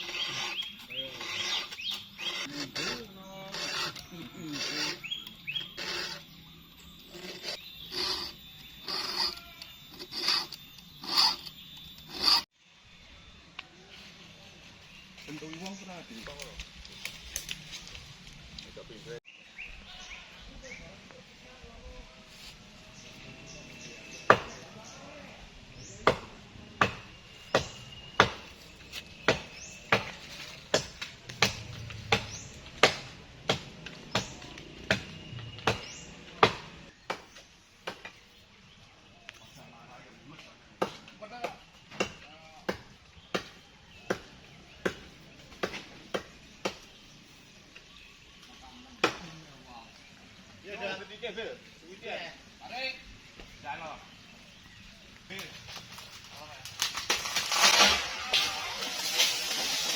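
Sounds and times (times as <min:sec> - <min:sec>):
hand file rasping: 0:00.0 - 0:06.4, 0:07.0 - 0:12.5.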